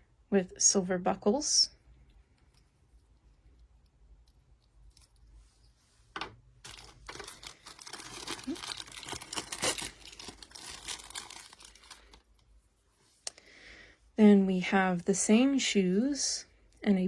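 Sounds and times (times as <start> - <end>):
packaging crinkling and tearing: 6.6 - 12.4.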